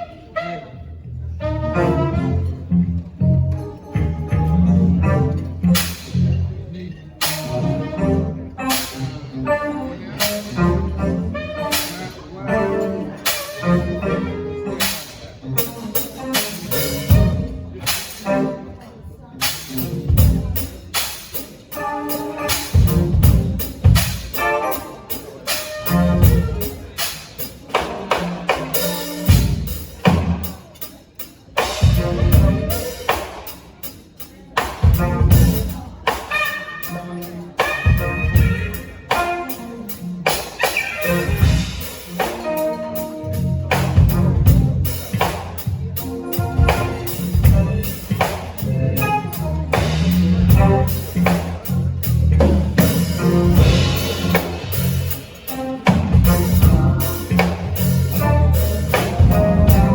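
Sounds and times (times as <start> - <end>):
pitched instruments: 0.0 - 59.9
bass line: 0.6 - 6.8, 13.5 - 17.9, 22.5 - 24.6, 25.3 - 27.0, 31.8 - 33.1, 34.8 - 59.9
drum kit: 4.3 - 9.3, 10.1 - 18.6, 19.4 - 59.9.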